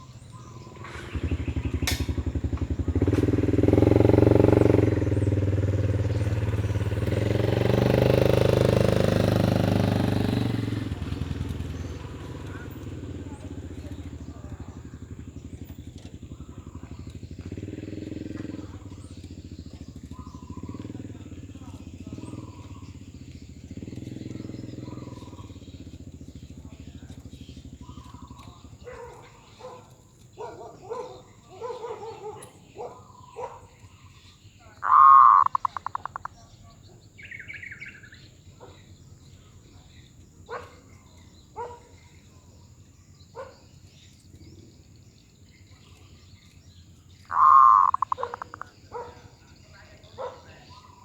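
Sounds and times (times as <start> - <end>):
motorcycle engine running: 0.0 - 51.0
dove cooing: 8.4 - 39.0, 47.2 - 51.0.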